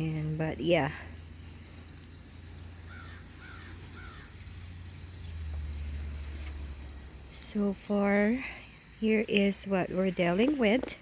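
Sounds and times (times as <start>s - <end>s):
low steady rumble: 0.0s - 11.0s
crow cawing: 2.9s - 4.5s.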